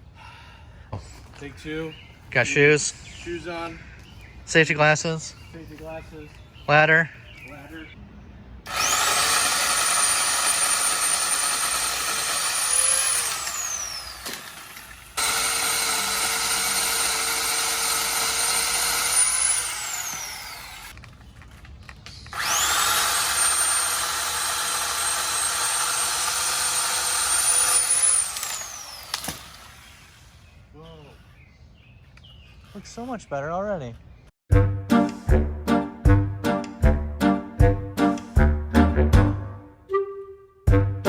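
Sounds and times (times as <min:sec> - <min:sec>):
electric saw cutting branches: 0:08.7 - 0:21.0, 0:22.3 - 0:30.4.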